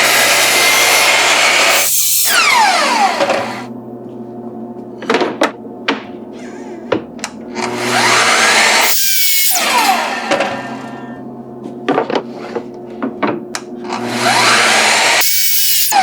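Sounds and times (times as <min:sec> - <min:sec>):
power tool motor whining: 0:00.0 - 0:03.7, 0:07.6 - 0:11.2, 0:13.8 - 0:16.0
parts being handled knocking: 0:11.6 - 0:13.6.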